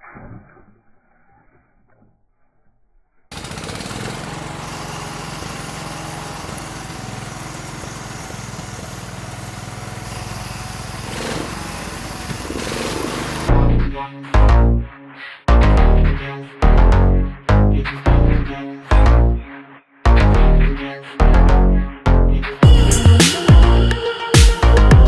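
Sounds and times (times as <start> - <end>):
tractor engine chugging: 3.3 - 13.5, 22.6 - 25.0.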